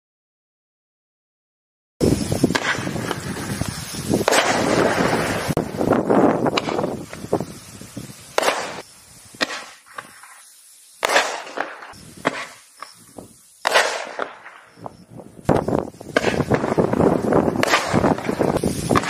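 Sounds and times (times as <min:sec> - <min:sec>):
sharp bangs and pops: 0:02.0 - 0:07.5, 0:08.3 - 0:10.4, 0:11.0 - 0:19.0
small crackles: 0:06.5 - 0:14.8.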